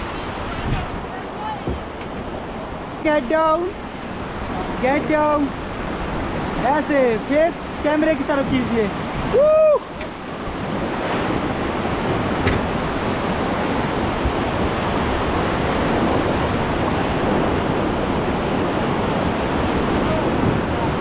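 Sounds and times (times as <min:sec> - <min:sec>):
river water rushing: 0:00.0 - 0:21.0
wind buffeting microphone: 0:00.0 - 0:21.0.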